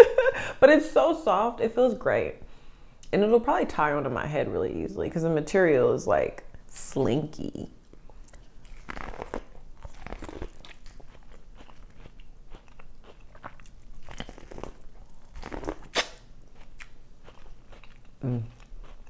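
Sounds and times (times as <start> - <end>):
person chewing crunchy food: 8.0 - 19.0
wet mouth clicks: 15.4 - 16.2.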